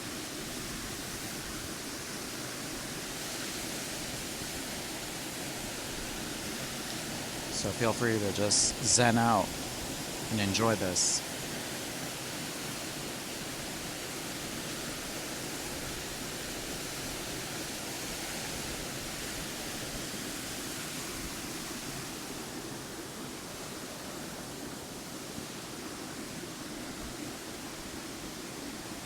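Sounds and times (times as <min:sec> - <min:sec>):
waterfall rushing: 0:00.0 - 0:24.1.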